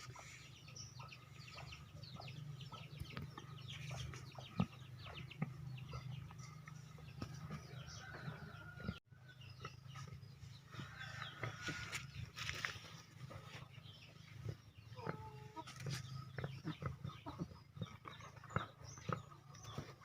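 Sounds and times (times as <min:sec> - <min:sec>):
fowl clucking and chirping: 0:00.0 - 0:20.0.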